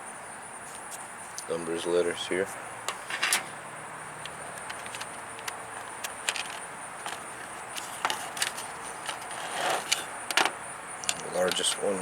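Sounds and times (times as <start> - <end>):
steady background hiss: 0.0 - 12.0
plastic parts clicking and tapping: 4.2 - 11.8.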